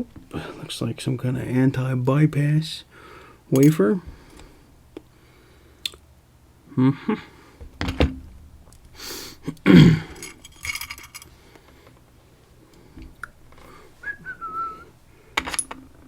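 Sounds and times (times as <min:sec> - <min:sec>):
metal lock parts clinking: 0:03.6 - 0:03.8, 0:10.2 - 0:11.3, 0:15.4 - 0:15.9.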